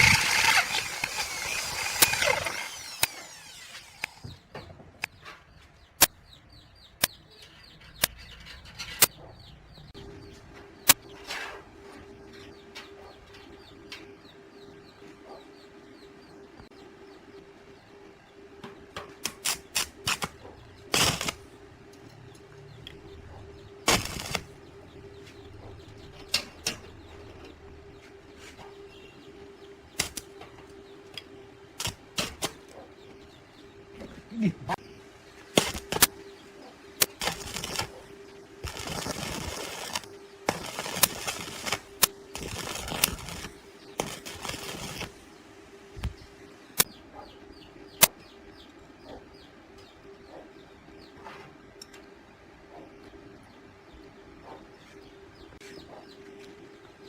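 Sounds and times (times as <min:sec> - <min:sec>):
angle grinder spinning down: 0:00.0 - 0:04.4.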